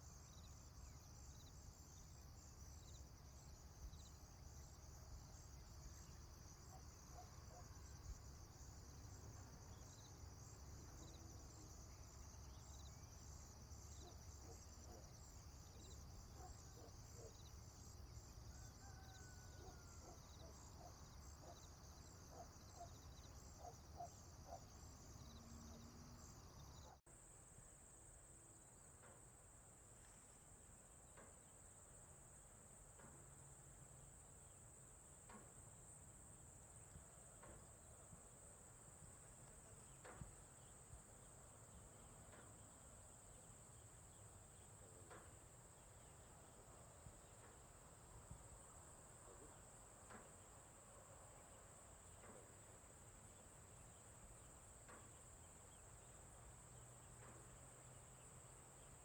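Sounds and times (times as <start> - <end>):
high-pitched insect trill: 0.0 - 27.0
pulsing insect chorus: 0.0 - 27.0, 35.8 - 59.0
faint ticks: 28.9 - 34.4, 35.1 - 48.6, 49.2 - 59.0.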